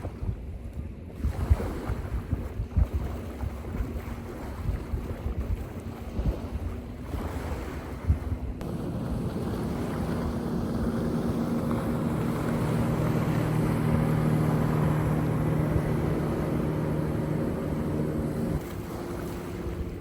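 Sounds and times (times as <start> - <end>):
motor engine droning: 5.8 - 20.0.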